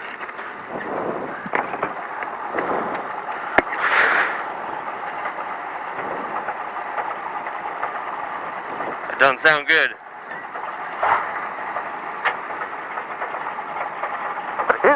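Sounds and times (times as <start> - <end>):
rattles and clicks: 0.0 - 14.9
truck cab rushing noise: 0.0 - 14.9.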